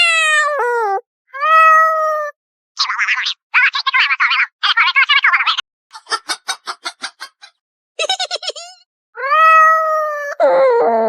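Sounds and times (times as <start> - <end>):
cartoon rattling animal call: 2.8 - 8.8.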